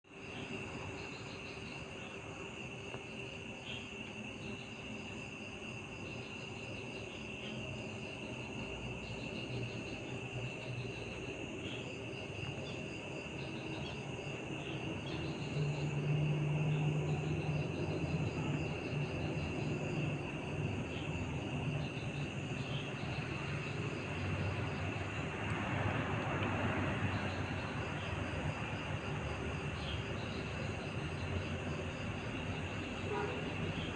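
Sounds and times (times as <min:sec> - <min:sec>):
insects chirping: 0:00.1 - 0:33.9.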